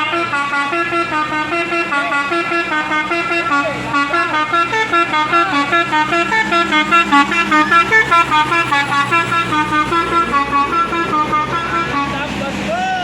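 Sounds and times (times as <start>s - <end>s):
multi-tone bus horn melody: 0.0s - 13.0s.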